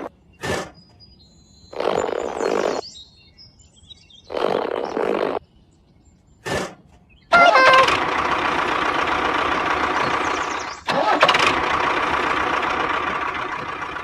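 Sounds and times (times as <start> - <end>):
engine-like sound starting up: 7.3 - 14.0.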